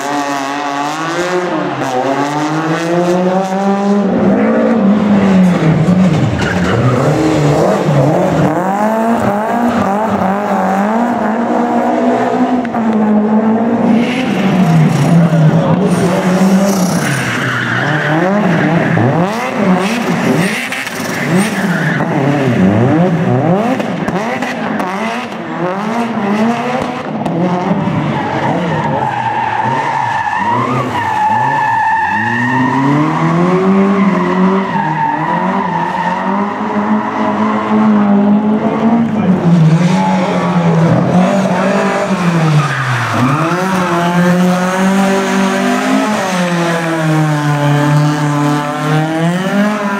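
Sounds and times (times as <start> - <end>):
rally car engine revving: 0.0 - 49.9
tyres squealing and skidding: 4.1 - 11.9, 13.8 - 23.0, 27.8 - 49.9.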